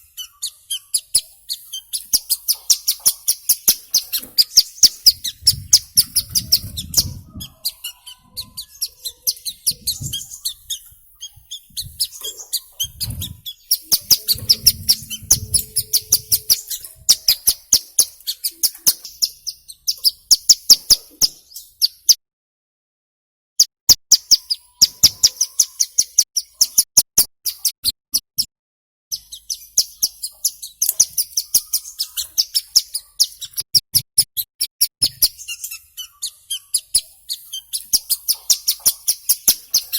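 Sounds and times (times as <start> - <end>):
bird high ticking chirps: 0.0 - 22.2, 23.6 - 28.5, 29.1 - 39.9
dull low thumps: 5.1 - 7.6, 9.6 - 12.1, 12.8 - 17.3.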